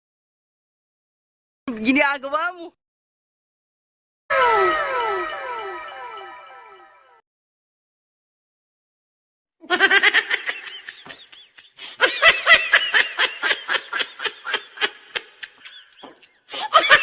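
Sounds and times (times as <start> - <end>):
high-pitched voice laughing: 9.6 - 17.0.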